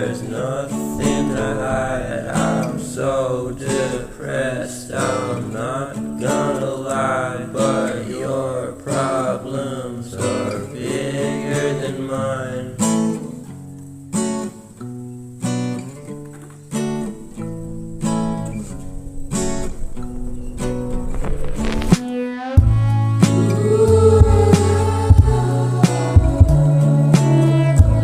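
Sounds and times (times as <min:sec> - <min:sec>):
person singing: 0:00.0 - 0:13.1, 0:22.2 - 0:28.0
strummed acoustic guitar: 0:00.0 - 0:28.0.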